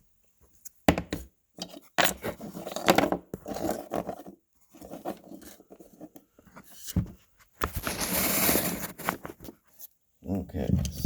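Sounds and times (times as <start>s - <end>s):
objects knocking and scraping: 0.9s - 9.6s.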